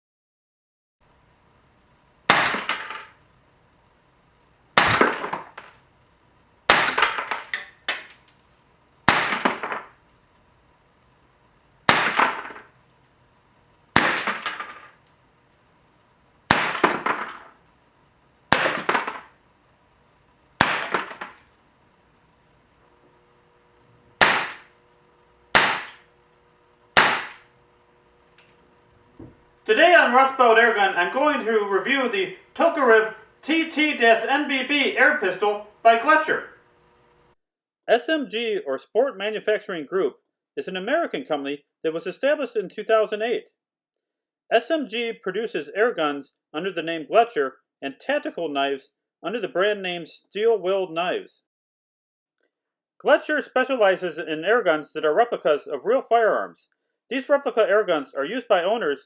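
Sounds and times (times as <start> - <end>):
sharp impacts: 2.3 - 3.2, 4.8 - 5.8, 6.7 - 8.3, 9.1 - 10.0, 11.8 - 12.8, 13.9 - 15.0, 16.5 - 17.6, 18.5 - 19.4, 20.6 - 21.5, 24.2 - 24.8, 25.5 - 26.1, 27.0 - 27.5.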